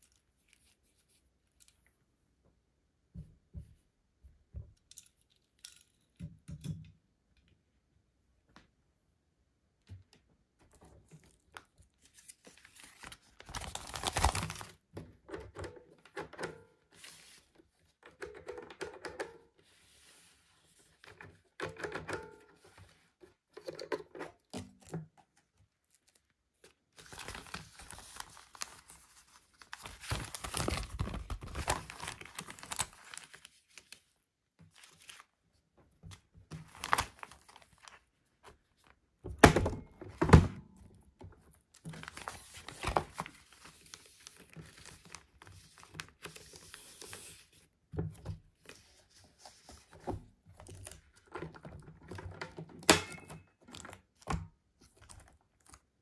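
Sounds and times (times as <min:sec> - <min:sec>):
packaging crinkling and tearing: 0:11.2 - 0:14.8, 0:25.8 - 0:34.0, 0:36.6 - 0:38.1, 0:41.8 - 0:47.2.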